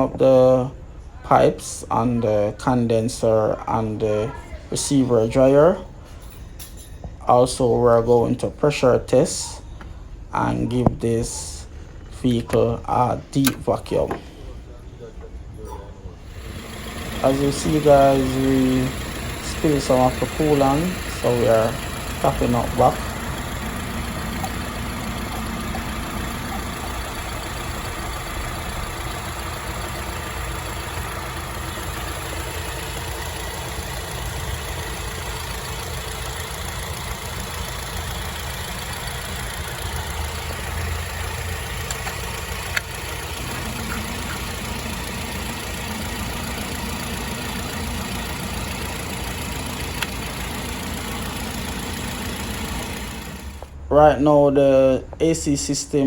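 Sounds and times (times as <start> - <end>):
vacuum pump running: 16.2 - 53.9.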